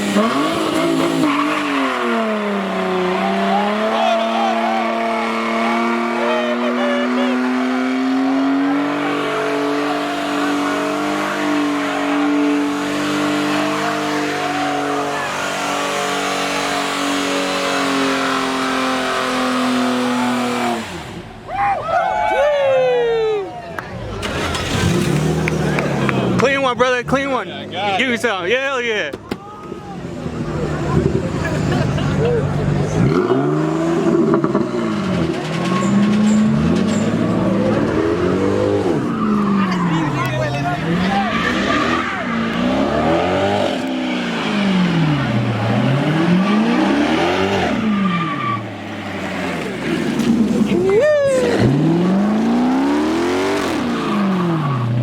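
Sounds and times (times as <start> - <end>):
car engine revving high: 0.0 - 21.4, 24.2 - 27.9, 30.2 - 55.0
tyres squealing: 0.1 - 17.3, 34.9 - 52.9.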